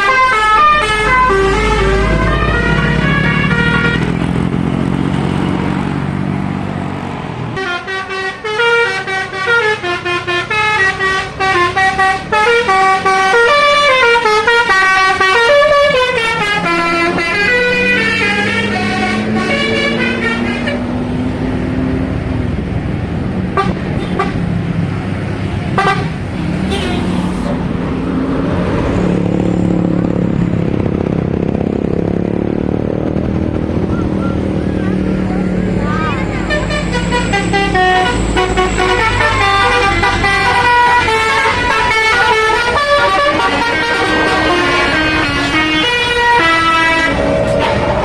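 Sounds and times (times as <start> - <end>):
musical bus horn: 0.0 - 4.3, 7.5 - 21.1, 23.5 - 24.5, 25.7 - 27.3, 34.2 - 48.0
engine and road noise: 0.0 - 48.0.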